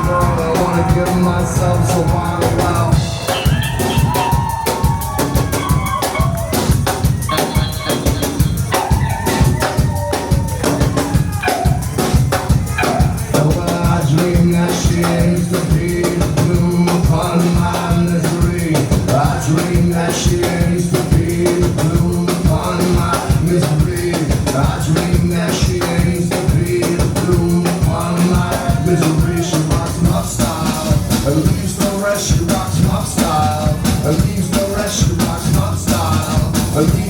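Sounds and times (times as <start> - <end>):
low repeating held note: 0.0 - 3.8
bass: 0.0 - 37.0
drum kit beat: 0.0 - 37.0.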